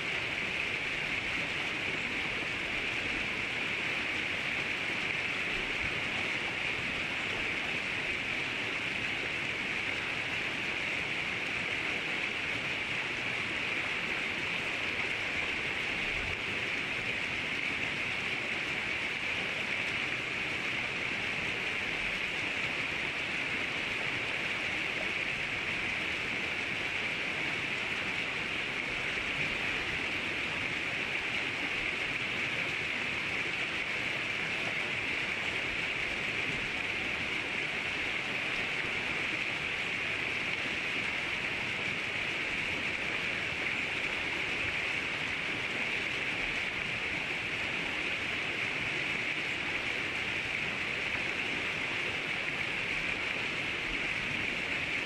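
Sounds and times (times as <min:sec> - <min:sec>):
river water rushing: 0:00.0 - 0:55.0.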